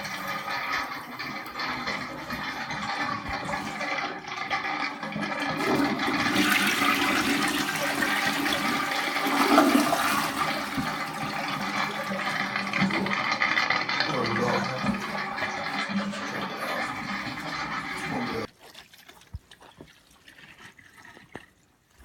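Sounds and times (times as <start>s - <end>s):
water rushing through pipes: 0.0s - 22.0s.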